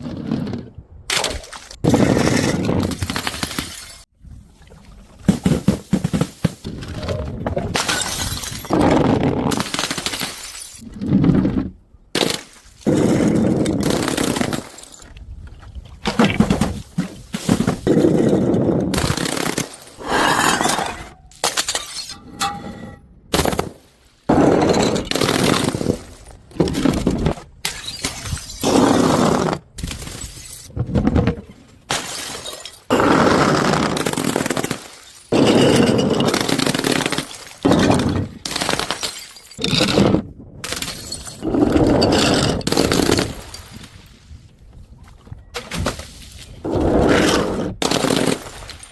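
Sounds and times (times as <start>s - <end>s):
glass bottles shattering: 7.8s - 8.7s, 20.5s - 22.6s, 31.9s - 32.9s, 34.2s - 39.9s, 40.7s - 41.4s.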